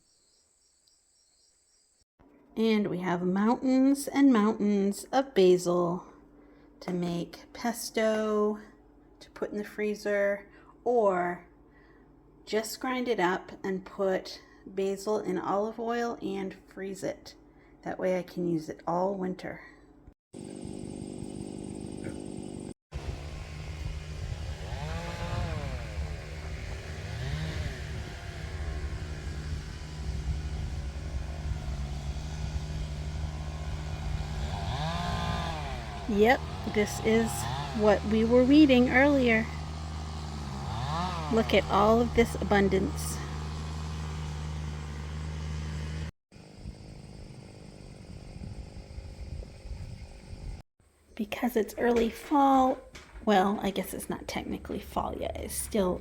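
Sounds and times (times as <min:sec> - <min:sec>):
engine running: 0:20.4 - 0:49.6.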